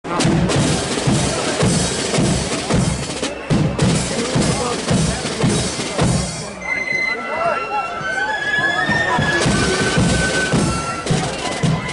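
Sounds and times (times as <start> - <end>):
bass drum and snare drums: 0.1 - 6.6, 8.9 - 11.9
marching flute band playing: 0.2 - 11.9.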